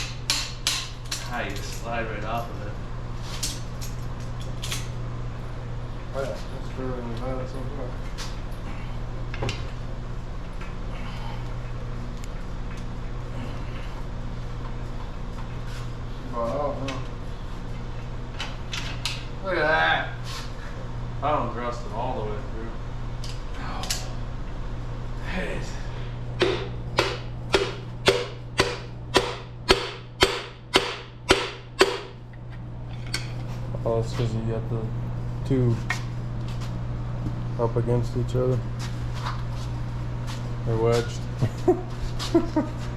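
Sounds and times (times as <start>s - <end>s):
low steady hum: 0.0s - 42.9s
hammer blows ringing: 26.4s - 32.2s.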